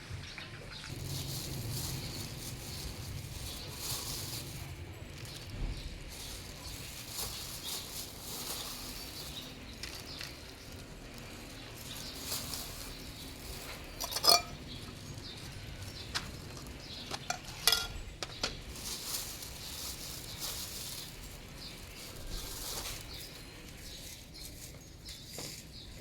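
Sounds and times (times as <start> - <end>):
dishes clinking and scraping: 13.6 - 14.8, 17.0 - 18.7
ringing dish clinks: 14.2 - 14.6.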